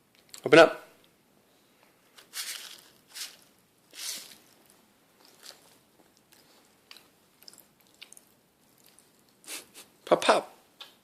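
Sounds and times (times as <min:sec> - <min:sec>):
faint crunching: 0:01.8 - 0:09.7
candy crackling while chewed: 0:02.2 - 0:09.5.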